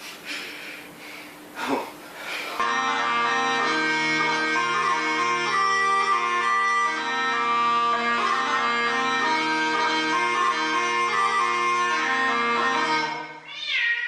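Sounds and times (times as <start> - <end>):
instrumental music over drone: 2.6 - 13.4.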